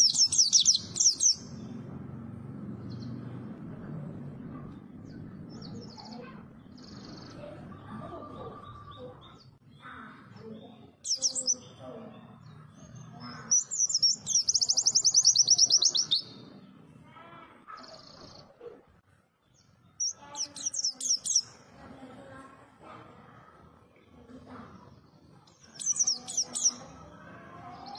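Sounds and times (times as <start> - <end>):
bird chirping and trilling: 0.0 - 2.0, 5.0 - 16.7, 19.5 - 21.7, 24.9 - 27.9.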